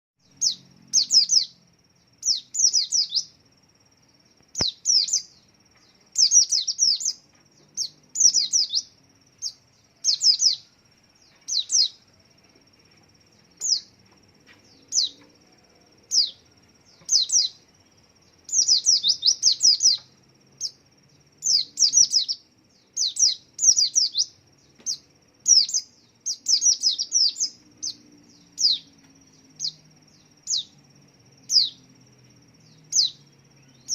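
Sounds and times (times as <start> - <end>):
bird chirping: 0.2 - 33.9
faint high whine: 0.2 - 33.9.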